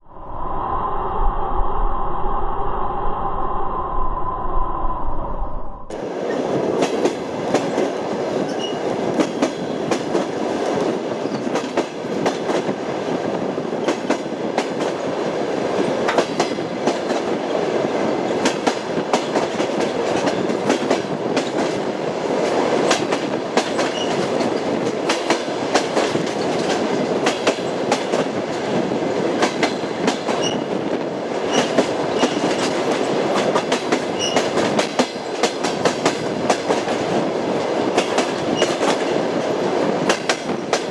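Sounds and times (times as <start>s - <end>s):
steady train rumble: 0.0s - 40.9s
train wheels clacking over rail joints: 6.6s - 12.8s, 18.3s - 28.7s, 29.3s - 30.7s, 31.4s - 39.2s, 40.0s - 40.9s.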